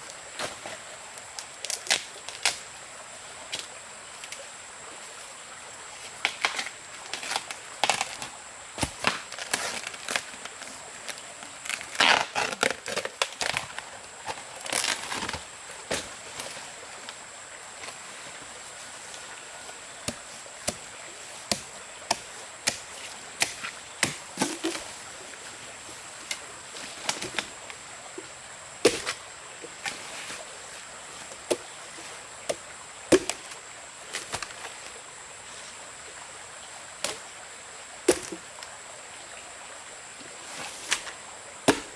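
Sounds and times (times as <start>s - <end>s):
steady hiss: 0.0s - 41.9s
blade chopping bamboo: 21.5s - 24.8s, 28.9s - 29.2s, 32.5s - 33.6s, 38.1s - 38.4s, 41.7s - 41.9s.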